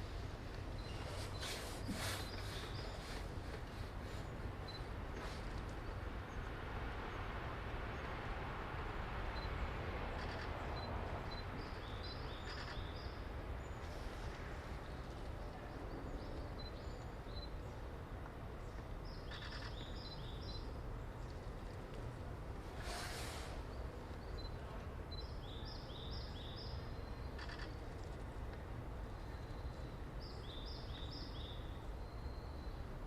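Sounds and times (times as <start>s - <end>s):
outdoor background hiss: 0.0s - 33.0s
birds chirping: 0.7s - 4.9s.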